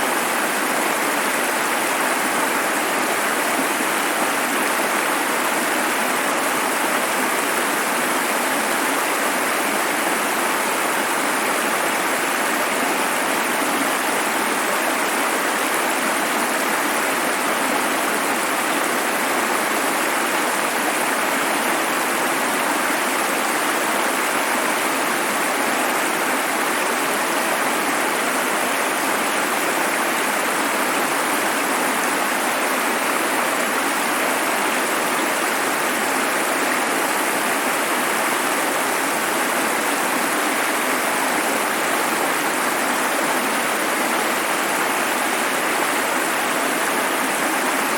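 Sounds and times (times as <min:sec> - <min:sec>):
running water rushing: 0:00.0 - 0:47.9.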